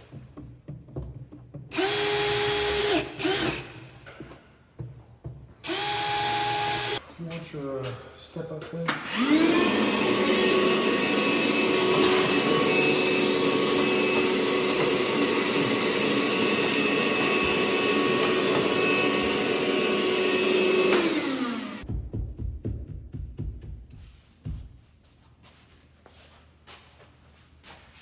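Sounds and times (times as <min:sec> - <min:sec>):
small electric motor whining: 0:05.6 - 0:07.0, 0:09.1 - 0:21.8.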